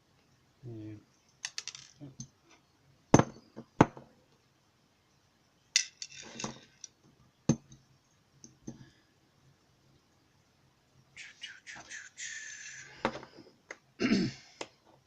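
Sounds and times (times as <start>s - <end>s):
small metal parts clinking: 1.3s - 2.2s, 5.8s - 7.0s.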